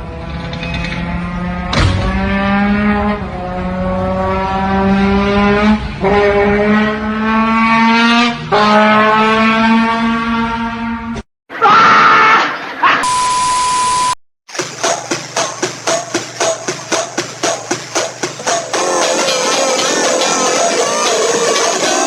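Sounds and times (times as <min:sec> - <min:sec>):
vehicle engine running: 0:14.5 - 0:22.0.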